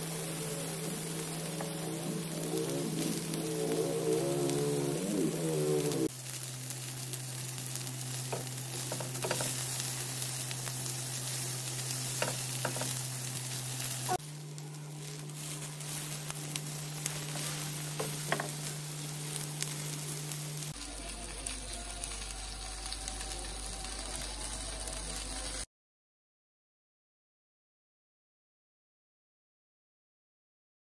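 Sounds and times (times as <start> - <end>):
low hum: 0.0 - 6.1
meat sizzling with pops: 0.0 - 25.6.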